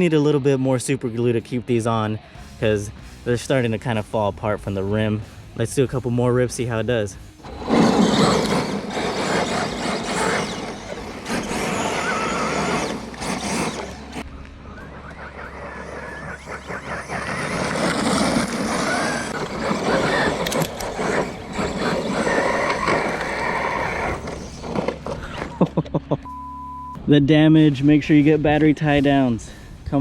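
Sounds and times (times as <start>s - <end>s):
tyres scrabbling on gravel: 7.4s - 14.2s, 15.5s - 25.6s
electric motor whining: 7.4s - 25.7s.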